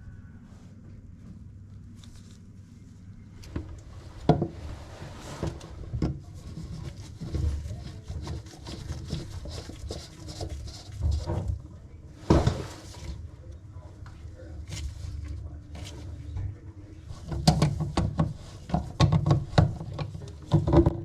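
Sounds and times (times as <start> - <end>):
knocks of plumbing parts: 17.2 - 21.0.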